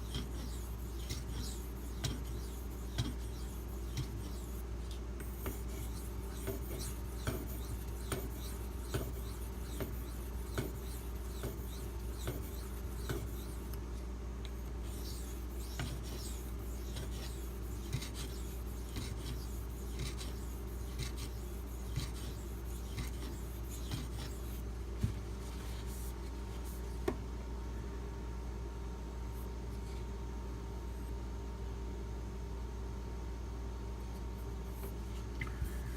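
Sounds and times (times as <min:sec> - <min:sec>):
knife rasping on sharpening stone: 0:00.0 - 0:04.6
steady low hum: 0:00.0 - 0:35.9.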